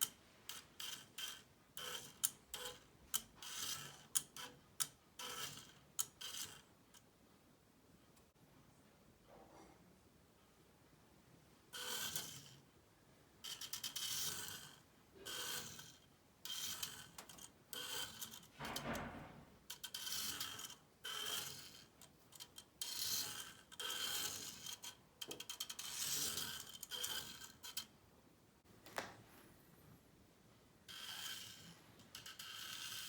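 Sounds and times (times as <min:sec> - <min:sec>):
toy car motor whining: 0:13.5 - 0:17.2, 0:25.5 - 0:27.8.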